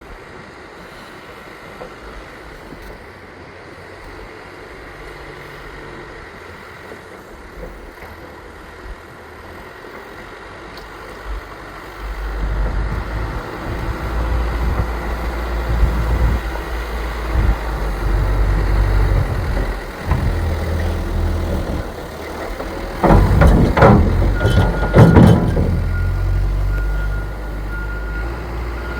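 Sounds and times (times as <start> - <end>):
diesel engines of backhoe loaders: 0.0 - 28.9
loud clattering knocks: 17.3 - 26.6.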